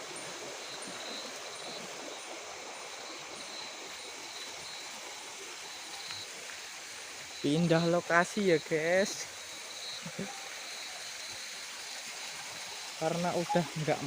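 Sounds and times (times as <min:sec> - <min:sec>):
faint insect chirping: 0:00.0 - 0:14.0
steady hiss: 0:00.0 - 0:14.0.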